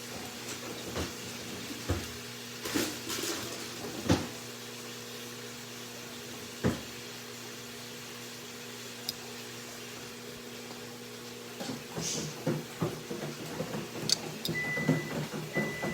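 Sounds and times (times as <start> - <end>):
objects knocking and clattering: 11.6 - 15.9.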